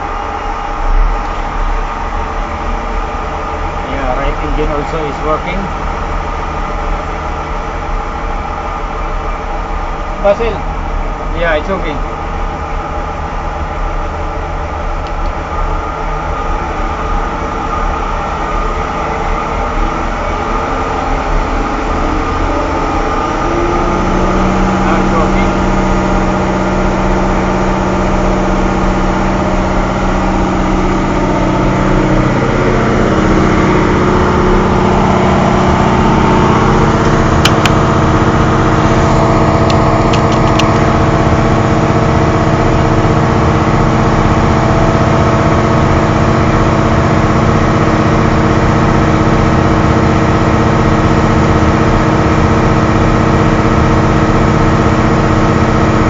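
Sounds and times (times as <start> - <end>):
diesel engines running: 0.0 - 56.0
sharp clicks: 39.6 - 40.8.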